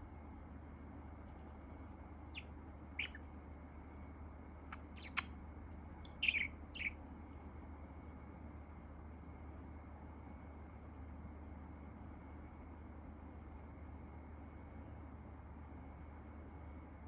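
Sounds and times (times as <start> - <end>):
budgerigar chirps and squawks: 2.3 - 3.2, 4.7 - 5.3, 6.1 - 6.9.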